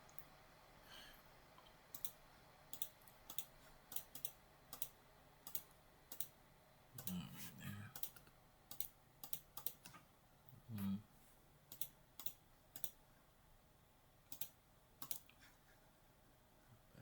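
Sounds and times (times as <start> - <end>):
mouse and keyboard clicks: 8.0 - 10.0, 11.7 - 13.0, 14.3 - 15.4.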